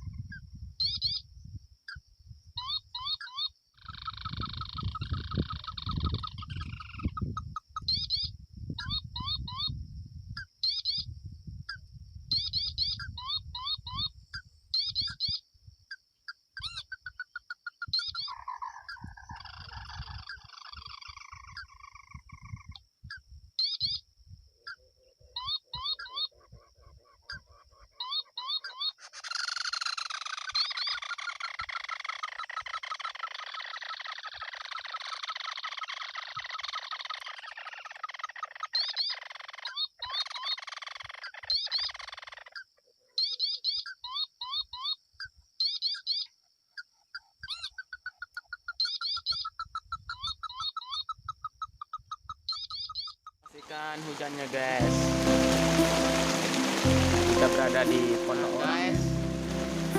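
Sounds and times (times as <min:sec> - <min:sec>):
wind rumbling on microphone: 0:00.0 - 0:02.6, 0:03.9 - 0:15.8, 0:18.8 - 0:23.5
dense hiss: 0:53.6 - 0:59.9.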